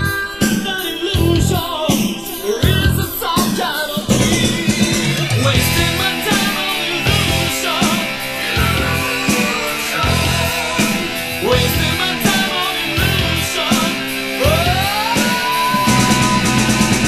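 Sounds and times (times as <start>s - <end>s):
heavy metal music: 0.0s - 17.0s
guitar note sliding up: 5.7s - 12.4s.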